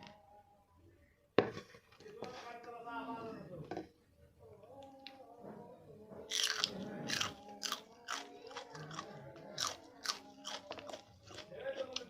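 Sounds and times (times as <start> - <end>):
crunching chilli: 6.2 - 12.0.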